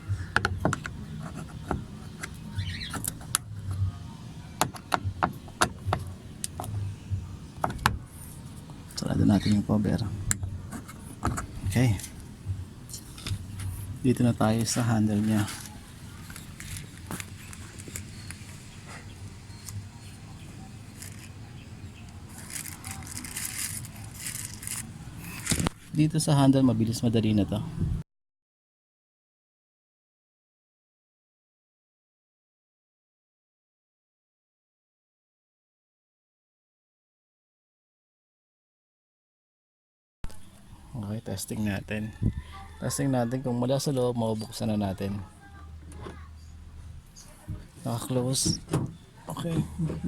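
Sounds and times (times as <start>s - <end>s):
low steady hum: 0.0s - 28.0s
light rustling and scraping: 0.1s - 4.0s, 4.7s - 26.0s, 45.8s - 50.0s.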